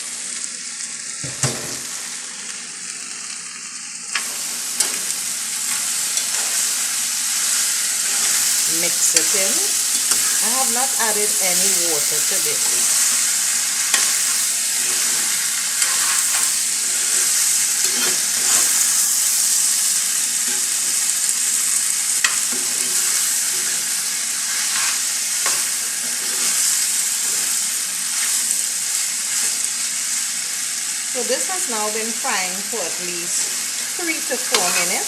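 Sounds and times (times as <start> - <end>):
food sizzling in a pan: 0.0 - 35.0
spoon stirring and scraping: 5.7 - 18.9, 24.5 - 26.7.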